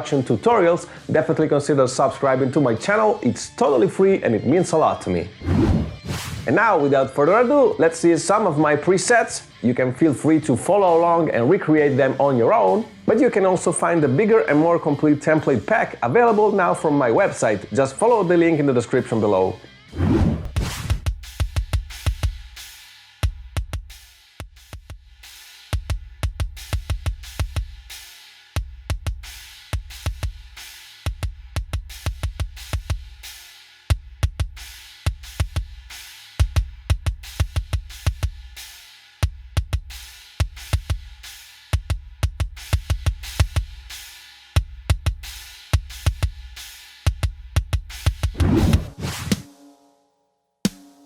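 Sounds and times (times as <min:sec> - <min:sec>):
snare and cymbal hits: 0:05.8 - 0:06.9, 0:20.5 - 0:49.9, 0:50.7 - 0:51.0
double-bass kick drum runs: 0:20.4 - 0:22.6, 0:23.2 - 0:28.0, 0:28.6 - 0:33.3, 0:33.9 - 0:44.0, 0:44.6 - 0:48.9.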